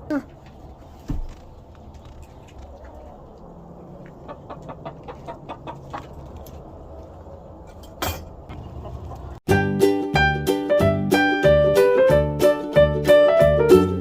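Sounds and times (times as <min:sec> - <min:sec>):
hens clucking: 0:01.5 - 0:07.7, 0:08.3 - 0:09.4.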